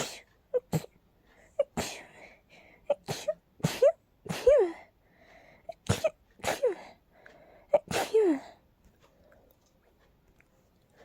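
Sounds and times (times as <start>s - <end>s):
person sneezing: 0.0s - 0.9s, 2.9s - 4.9s, 5.7s - 7.0s, 7.8s - 8.5s.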